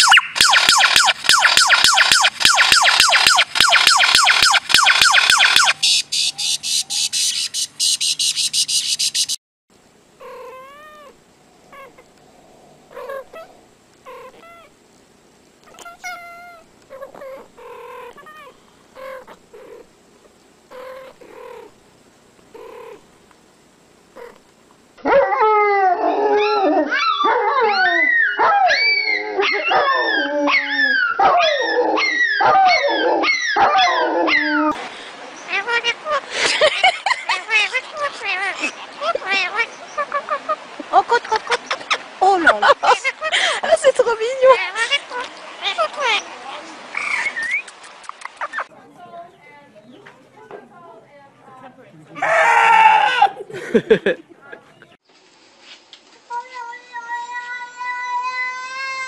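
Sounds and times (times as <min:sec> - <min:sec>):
chorus of animal cries: 0:10.2 - 0:12.1, 0:12.8 - 0:14.8, 0:15.7 - 0:19.9, 0:20.7 - 0:21.8, 0:25.0 - 0:34.8, 0:35.4 - 0:40.7, 0:52.2 - 0:53.6, 0:56.9 - 0:59.0
short animal cries: 0:52.2 - 0:53.4.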